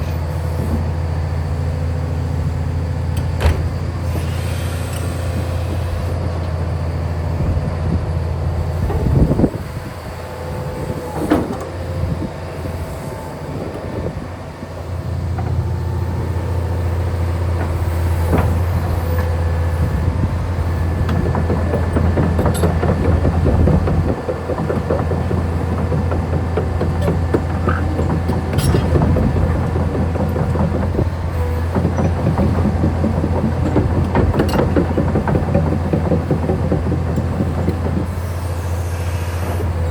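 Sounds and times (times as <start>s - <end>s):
excavator diesel engine under load: 0.0s - 39.9s
metal clanks and knocks: 17.5s - 39.9s.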